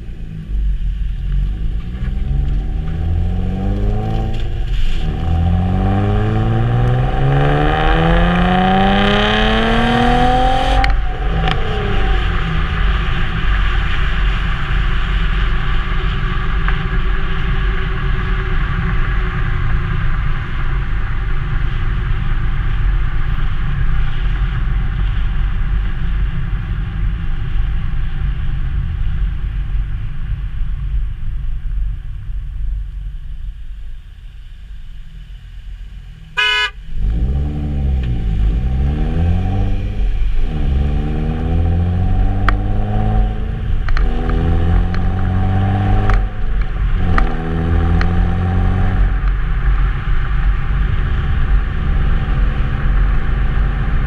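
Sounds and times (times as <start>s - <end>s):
car engine revving: 0.0s - 23.8s, 36.0s - 54.0s
low exhaust rumble: 0.0s - 54.0s
road noise: 0.0s - 54.0s.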